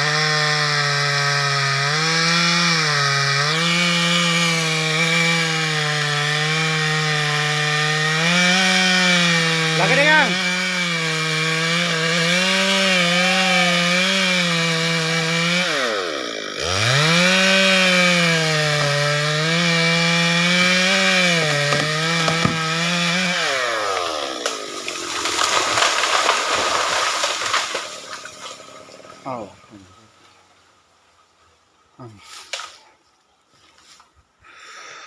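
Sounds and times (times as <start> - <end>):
chainsaw cutting wood: 0.0 - 29.5.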